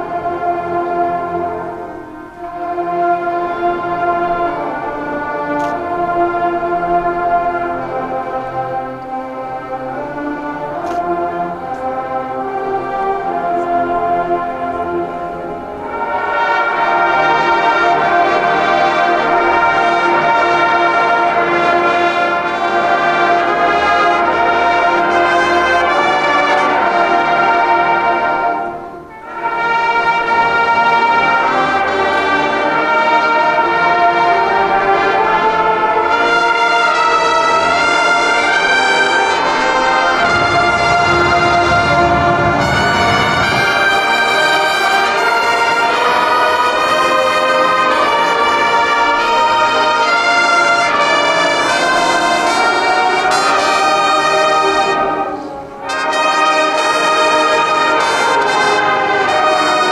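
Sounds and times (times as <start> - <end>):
marching band brass chords: 0.0 - 59.9
low rumble: 39.4 - 45.2.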